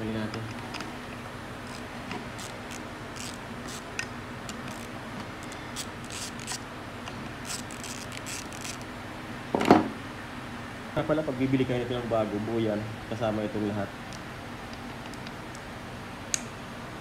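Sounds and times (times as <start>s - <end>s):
steady low hum: 0.0s - 17.0s
small parts clicking and rustling: 1.6s - 8.9s.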